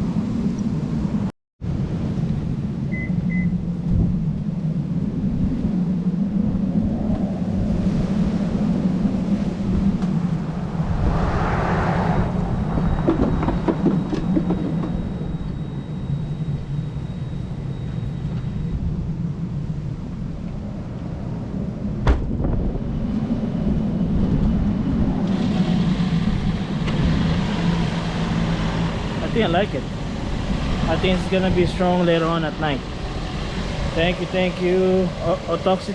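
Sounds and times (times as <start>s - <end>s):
car engine idling: 25.3s - 35.9s.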